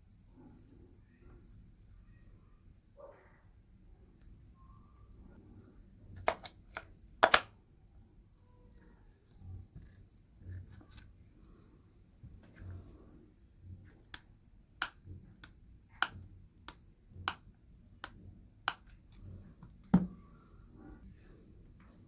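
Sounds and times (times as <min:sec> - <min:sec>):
crickets chirring: 0:00.0 - 0:22.0
sharp clicks and taps: 0:14.1 - 0:17.4, 0:18.0 - 0:19.0.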